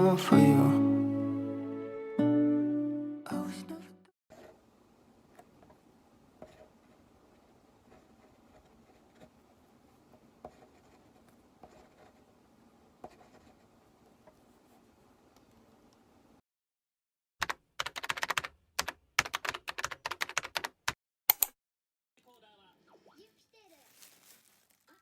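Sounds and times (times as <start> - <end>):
typing on computer keyboard: 17.4 - 21.5.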